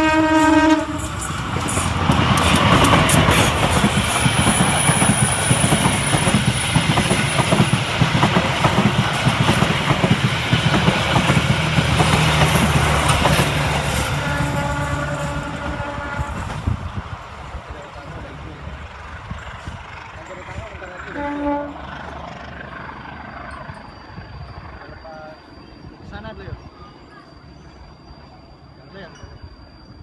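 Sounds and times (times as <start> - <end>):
train wheels rumbling: 0.0 - 30.0
wheels clattering over rails: 1.1 - 24.1.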